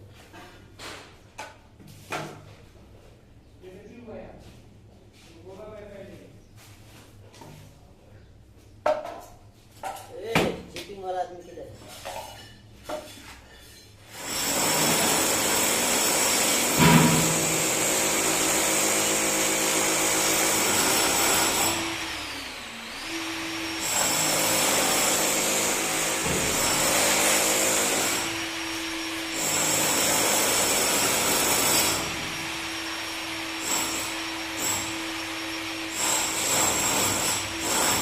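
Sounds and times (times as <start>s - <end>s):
power tool motor running: 14.2s - 38.0s.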